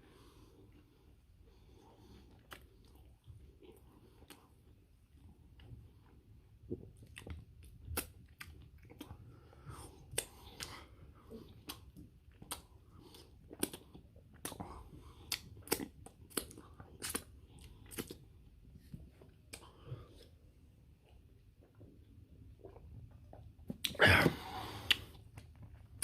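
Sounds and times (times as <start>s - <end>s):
wet mouth smacks chewing: 2.3s - 3.1s, 6.7s - 9.2s, 11.5s - 18.2s, 24.8s - 26.0s.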